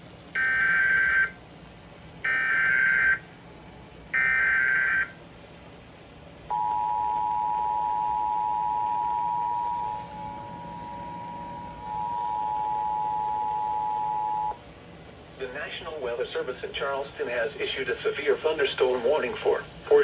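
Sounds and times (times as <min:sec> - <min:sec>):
steady two-tone attention signal: 0:06.5 - 0:14.6.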